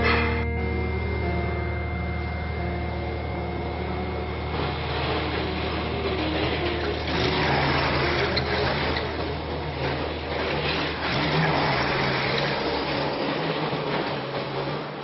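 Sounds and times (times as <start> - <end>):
forklift engine running: 0.0 - 15.0.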